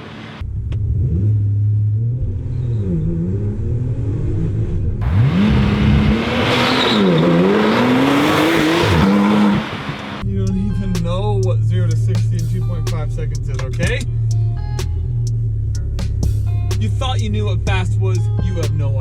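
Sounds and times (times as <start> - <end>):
sports car engine revving: 0.0 - 10.2.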